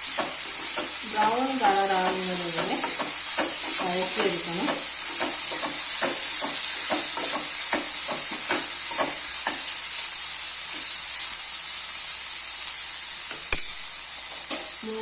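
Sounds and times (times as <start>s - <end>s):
onions sizzling in oil: 0.0s - 15.0s.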